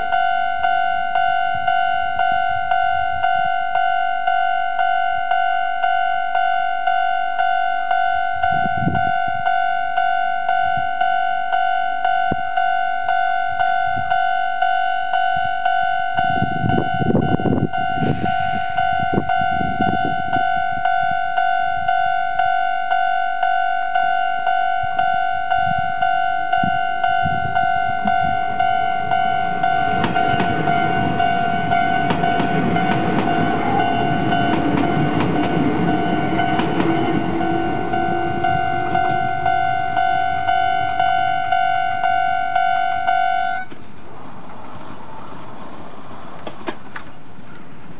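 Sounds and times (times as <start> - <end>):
level-crossing alarm bell clanging: 0.0 - 43.8
train wheel clatter: 29.8 - 39.3.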